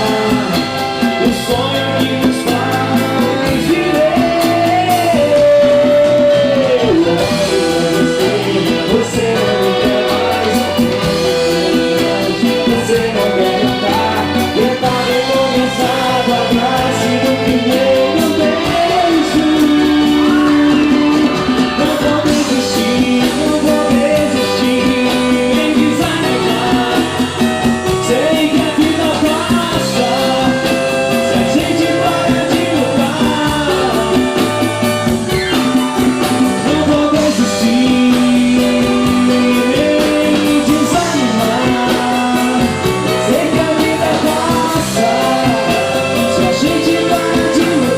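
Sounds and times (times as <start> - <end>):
live band playing: 0.0 - 47.9
person singing: 0.0 - 47.9.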